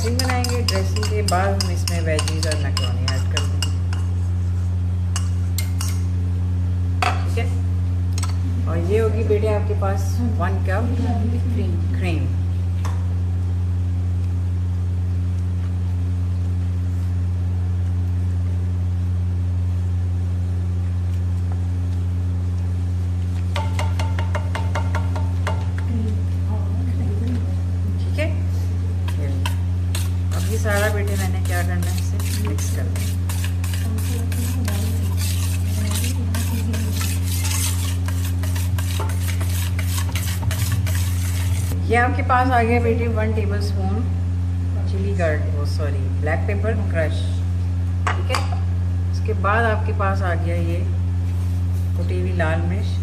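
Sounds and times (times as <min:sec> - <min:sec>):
utensil scraping a bowl: 0:00.0 - 0:06.1, 0:29.0 - 0:41.8
low electrical hum: 0:00.0 - 0:53.0.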